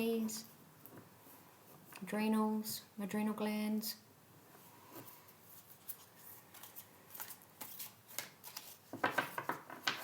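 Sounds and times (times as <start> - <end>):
cards being shuffled: 5.6 - 10.0.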